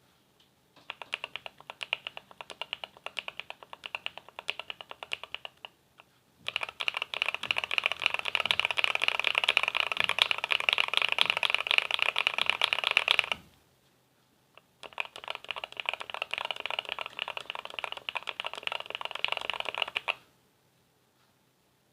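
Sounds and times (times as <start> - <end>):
fast typing on mechanical keyboard: 0.8 - 5.7, 6.4 - 13.4, 14.6 - 20.2.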